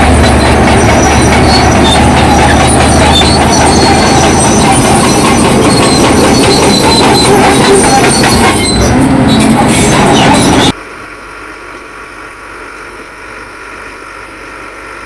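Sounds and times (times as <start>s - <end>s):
steel tracks clanking and squealing: 0.0s - 10.8s
bulldozer diesel engine under load: 0.0s - 15.0s.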